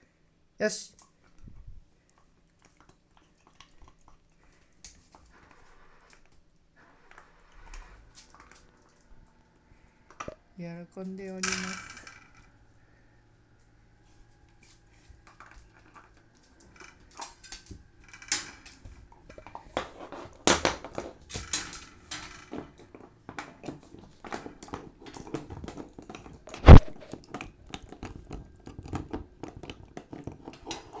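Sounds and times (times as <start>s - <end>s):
dog gnawing on antler: 1.0s - 6.4s, 22.5s - 31.0s.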